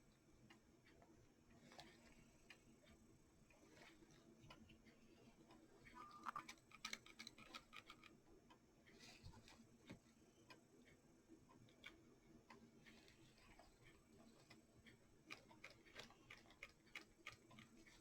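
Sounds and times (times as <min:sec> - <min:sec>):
small clicks and taps: 0:03.7 - 0:18.0.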